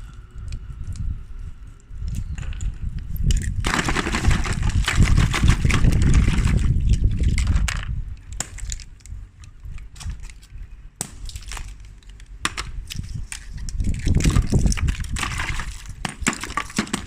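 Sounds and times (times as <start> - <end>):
ice cubes clattering: 3.6 - 7.9, 13.8 - 17.0.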